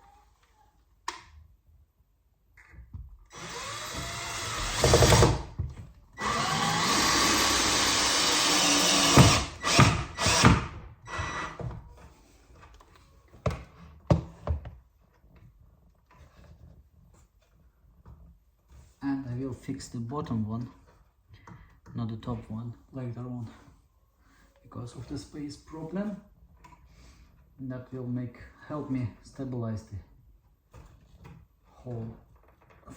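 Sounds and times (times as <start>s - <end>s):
power drill drilling into wood: 3.3s - 5.5s, 6.2s - 11.6s.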